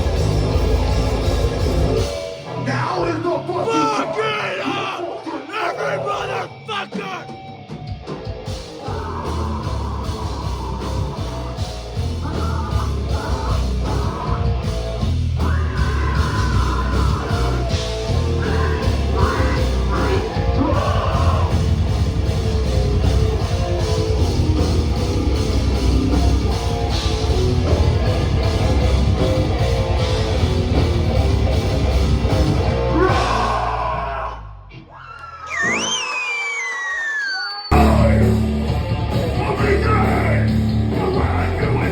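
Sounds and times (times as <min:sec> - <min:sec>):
heavy hardcore rock music: 0:00.0 - 0:34.9, 0:37.7 - 0:41.9
person yelling vocals: 0:02.8 - 0:07.3, 0:08.8 - 0:11.0, 0:32.9 - 0:34.5.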